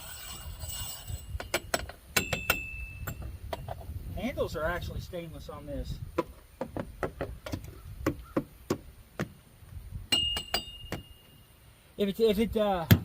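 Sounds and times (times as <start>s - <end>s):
ringing metal clink: 2.2s - 3.2s, 10.1s - 11.5s.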